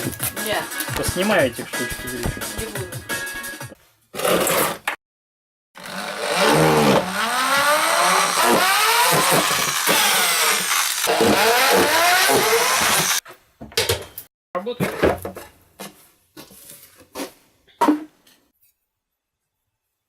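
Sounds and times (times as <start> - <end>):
motor revving up and down: 5.8 - 13.2.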